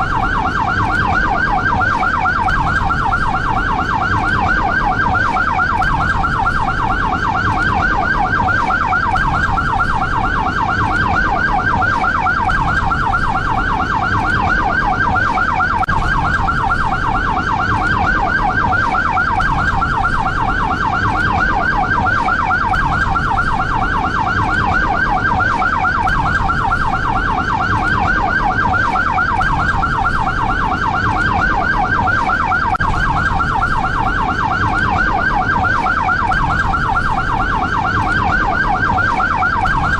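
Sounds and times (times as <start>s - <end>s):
ambulance siren yelping: 0.0s - 39.9s.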